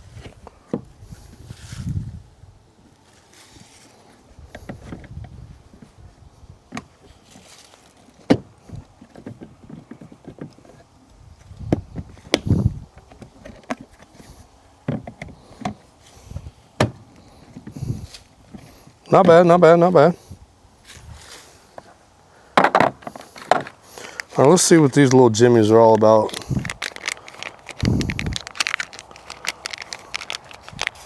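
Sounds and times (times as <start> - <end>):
dull thumps: 16.4 - 17.8, 22.6 - 23.8.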